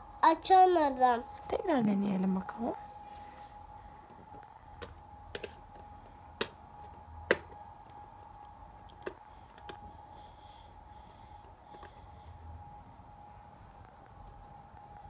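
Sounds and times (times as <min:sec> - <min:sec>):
plastic clicks and taps: 0:04.1 - 0:05.6.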